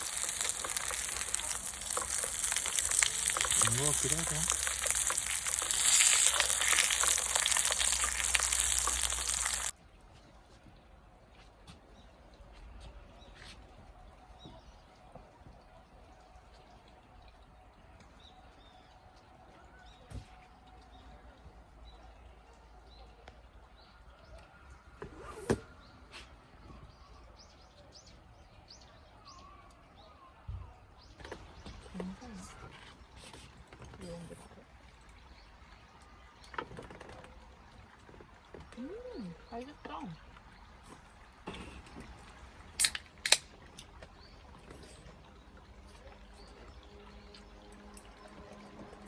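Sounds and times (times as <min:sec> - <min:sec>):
food sizzling in a pan: 0:00.0 - 0:09.7
small birds chirping: 0:00.0 - 0:09.7
sharp click or clatter: 0:42.8 - 0:43.5.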